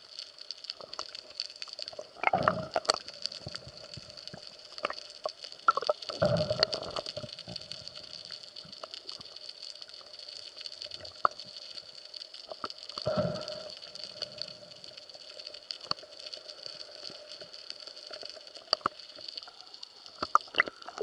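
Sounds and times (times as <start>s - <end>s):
steady hiss: 0.0s - 21.0s
water gurgling and sloshing: 1.9s - 5.1s.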